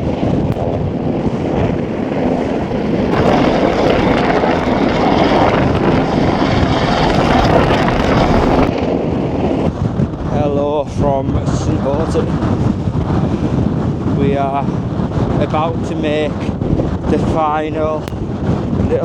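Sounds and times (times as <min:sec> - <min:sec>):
wind buffeting microphone: 0:00.0 - 0:19.0
helicopter rotor and engine: 0:00.1 - 0:09.5.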